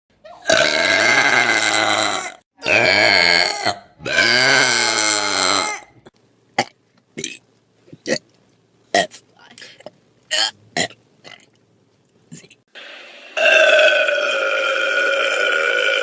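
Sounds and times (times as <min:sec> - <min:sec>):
person belching: 0:00.4 - 0:06.0, 0:13.4 - 0:16.0.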